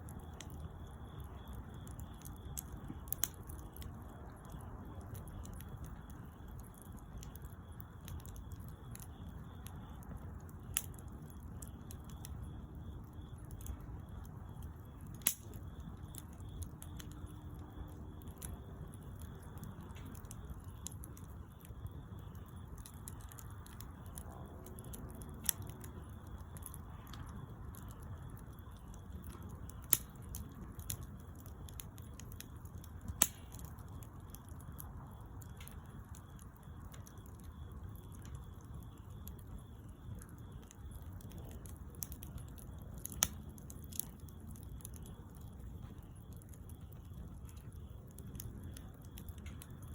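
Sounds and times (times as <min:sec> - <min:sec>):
campfire crackles and pops: 0:00.0 - 0:49.9
low rumble of campfire: 0:00.0 - 0:49.9.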